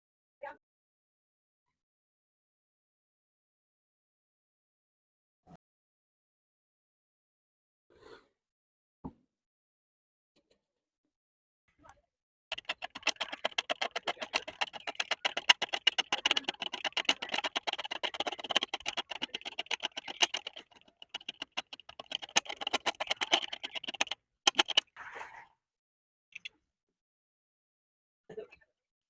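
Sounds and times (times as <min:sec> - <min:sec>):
rapid sharp clicking: 0:12.5 - 0:24.8.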